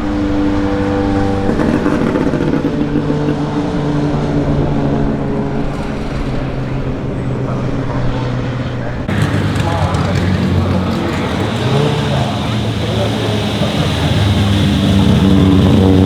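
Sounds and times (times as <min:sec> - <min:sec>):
turbocharged car engine running: 0:00.0 - 0:16.0.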